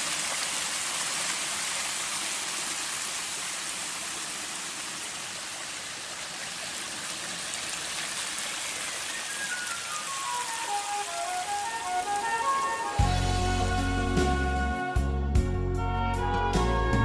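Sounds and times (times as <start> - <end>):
water rushing: 0.0 - 14.2
faint music notes: 9.3 - 17.0.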